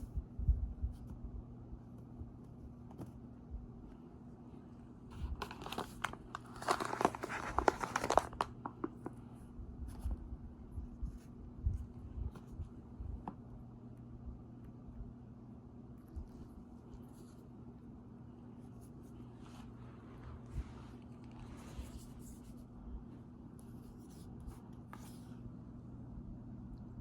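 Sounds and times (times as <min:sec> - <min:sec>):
low steady hum: 0:00.0 - 0:27.0
cornstarch crunching and squeaking: 0:05.4 - 0:08.6.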